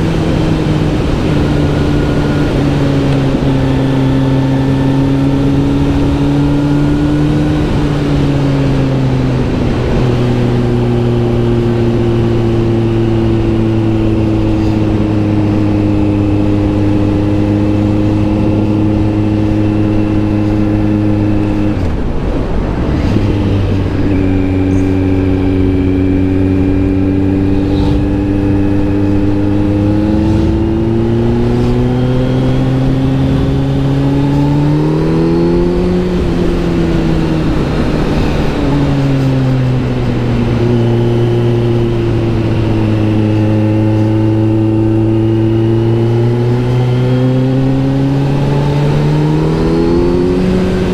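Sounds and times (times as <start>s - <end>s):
motorcycle engine running: 0.0s - 50.9s.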